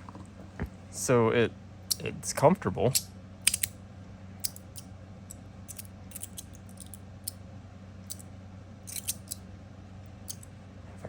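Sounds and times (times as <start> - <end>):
metal fidget slider clicking: 2.9 - 3.7, 8.9 - 9.4.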